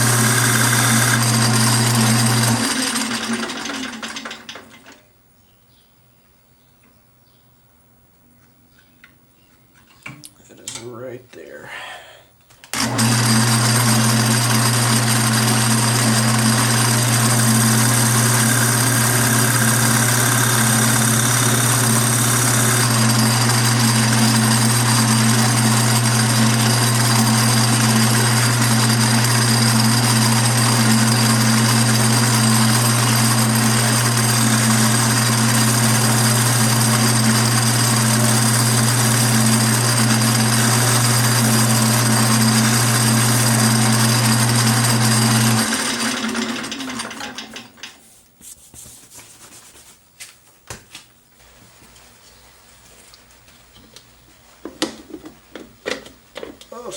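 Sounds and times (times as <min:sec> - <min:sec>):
wood lathe motor hum: 0:00.0 - 0:05.0, 0:12.7 - 0:47.9.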